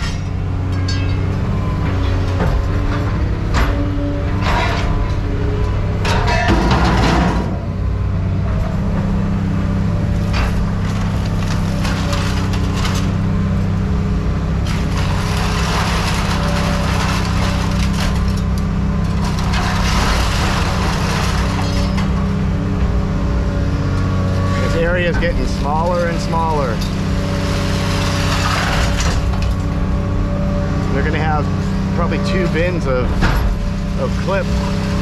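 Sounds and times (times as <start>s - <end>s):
scrap metal clanking: 0.0s - 5.3s, 6.0s - 7.6s, 10.2s - 13.3s, 14.5s - 23.1s, 23.8s - 35.0s
engine droning: 0.0s - 35.0s.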